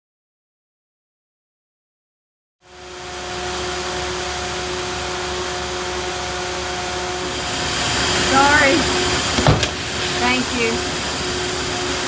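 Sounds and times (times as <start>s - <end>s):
steady hum tones: 2.8s - 12.0s.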